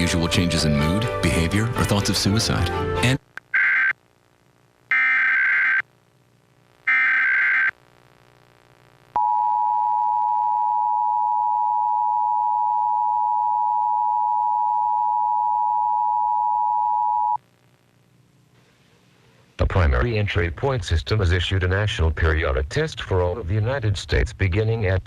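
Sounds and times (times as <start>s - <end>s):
screeching data burst: 6.9s - 7.8s.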